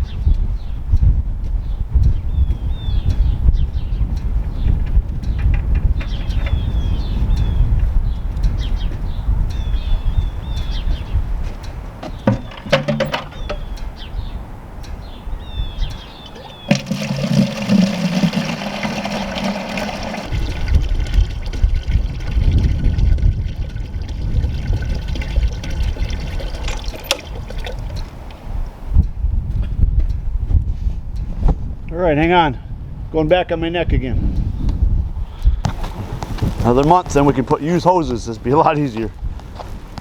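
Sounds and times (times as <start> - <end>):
wind rumble on microphone: 0.0 - 16.7, 18.6 - 40.0
birds chirping: 1.6 - 21.1
water pouring into rubber tub: 16.2 - 28.4.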